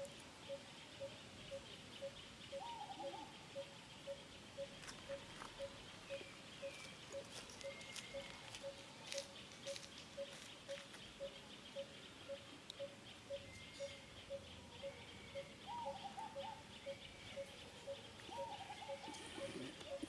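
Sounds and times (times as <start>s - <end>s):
short wavering calls: 0.0s - 20.0s.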